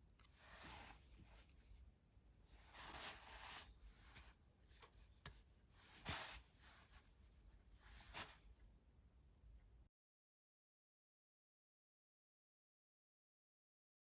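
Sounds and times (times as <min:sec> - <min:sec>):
cards sliding and rubbing: 0:00.3 - 0:01.3, 0:02.6 - 0:05.0, 0:05.8 - 0:07.0, 0:07.8 - 0:08.4.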